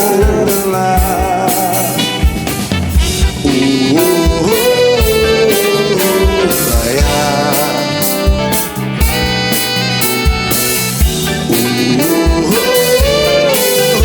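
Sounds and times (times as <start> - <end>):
steady drum beat: 0.0 - 14.0
horn section melody: 2.6 - 14.0.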